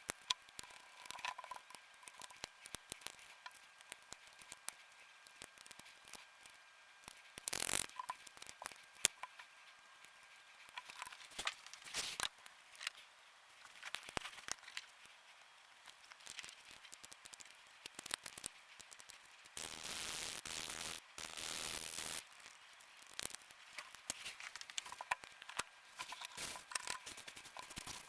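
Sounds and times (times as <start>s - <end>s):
plastic parts clicking and tapping: 0.0s - 6.2s, 22.8s - 28.0s
scraping and rustling: 22.2s - 28.0s.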